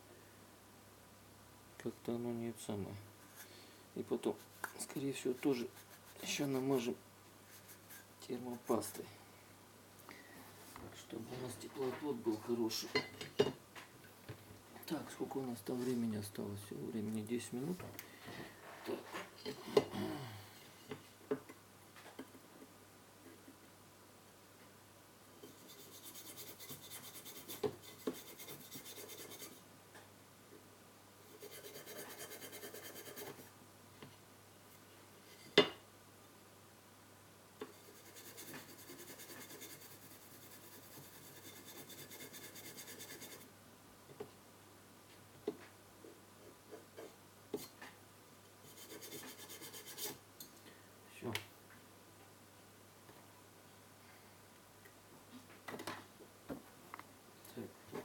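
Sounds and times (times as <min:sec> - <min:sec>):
scratching and scrubbing strokes: 0:04.3 - 0:06.9, 0:07.5 - 0:09.0, 0:25.4 - 0:29.6, 0:31.3 - 0:33.5, 0:37.6 - 0:43.4, 0:48.6 - 0:50.2.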